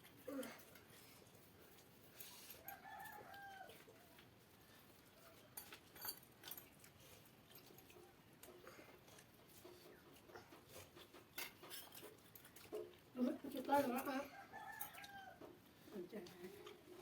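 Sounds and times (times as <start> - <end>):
distant rooster crowing: 2.6 - 3.8, 14.3 - 15.6.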